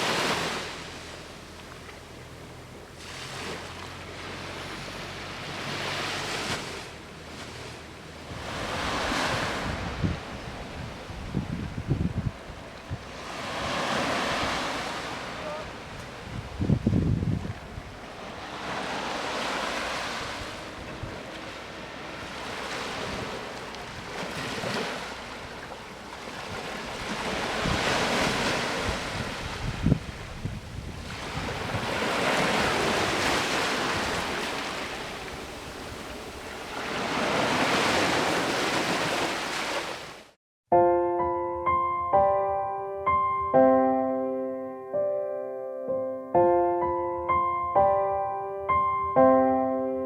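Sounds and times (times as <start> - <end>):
sea waves breaking on beach: 0.0 - 1.6, 2.9 - 40.4
wind buffeting microphone: 8.3 - 39.3.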